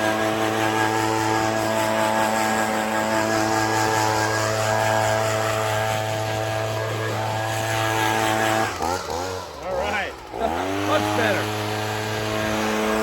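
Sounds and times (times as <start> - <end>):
chainsaw cutting log: 0.0 - 13.0.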